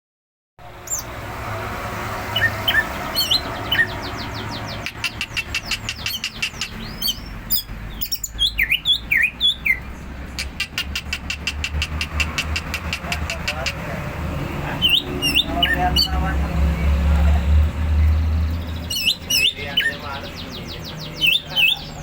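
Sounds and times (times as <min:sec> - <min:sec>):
bird chirps and whistles: 0:02.4 - 0:09.8, 0:14.8 - 0:16.1.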